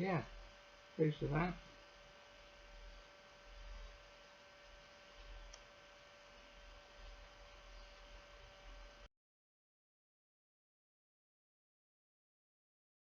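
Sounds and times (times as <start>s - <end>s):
faint electrical hum: 0.0s - 9.1s
faint tick: 5.5s - 5.7s.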